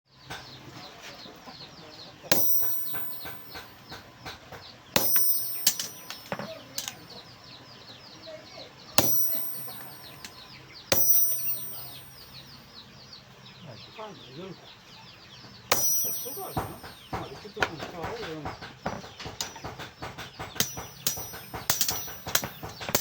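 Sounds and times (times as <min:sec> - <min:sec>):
birds chirping: 0:00.1 - 0:23.0
hammer striking steel anvil: 0:02.3 - 0:04.0, 0:05.0 - 0:07.0, 0:09.0 - 0:12.5, 0:15.7 - 0:23.0.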